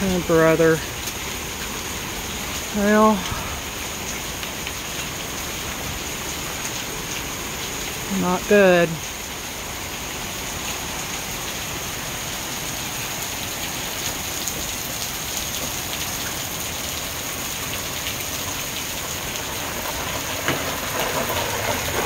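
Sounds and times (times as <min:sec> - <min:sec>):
hail and rain pelting down: 0:00.0 - 0:22.0
hailstones clicking: 0:13.0 - 0:22.0.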